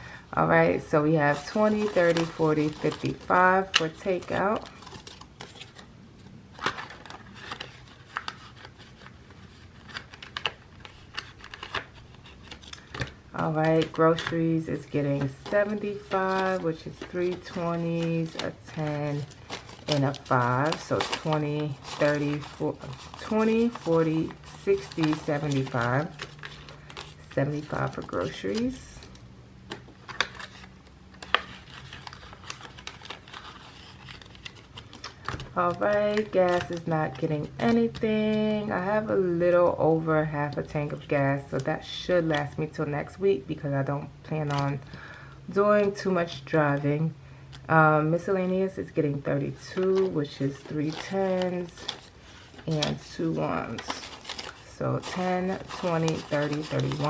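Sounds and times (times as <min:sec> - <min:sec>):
paper banknotes crinkling: 0:01.2 - 0:38.6, 0:49.5 - 0:57.0.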